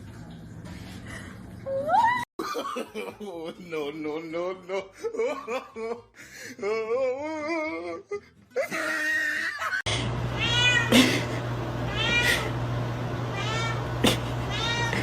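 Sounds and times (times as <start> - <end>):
cat meowing: 10.4 - 10.9, 11.9 - 12.5, 13.3 - 15.0.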